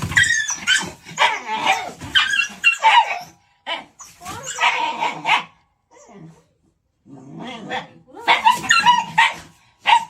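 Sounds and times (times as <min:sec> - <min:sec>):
dog barking: 0:04.6 - 0:05.6, 0:08.2 - 0:10.0.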